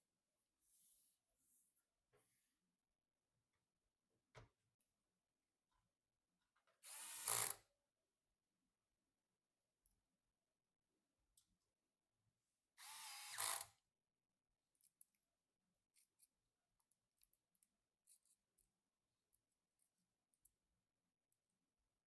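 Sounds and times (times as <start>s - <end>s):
power screwdriver whining: 6.8s - 7.6s, 12.8s - 13.7s.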